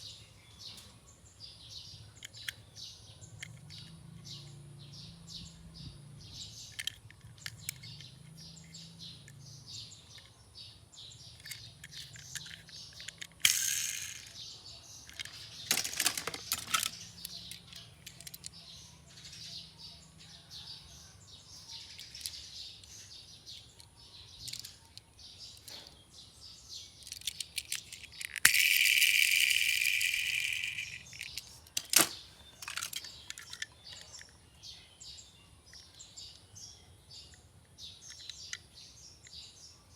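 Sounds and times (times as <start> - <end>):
birds chirping: 0.0 - 39.9
clicks and rattles: 6.5 - 9.4, 11.3 - 14.4, 15.0 - 18.6, 21.9 - 25.9, 27.0 - 34.4.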